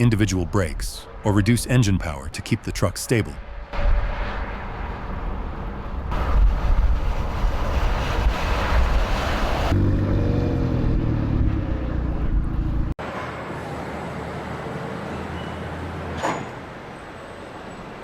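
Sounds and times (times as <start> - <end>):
wind and road noise: 0.0 - 18.0
truck engine: 2.6 - 16.8.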